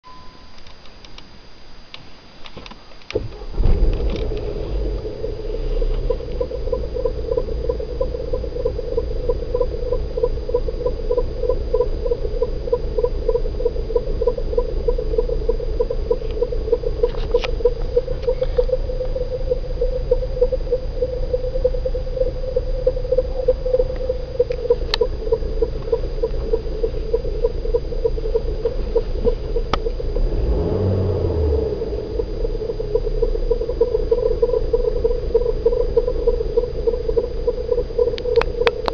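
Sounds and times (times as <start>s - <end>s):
car engine starting and running: 2.5s - 38.9s.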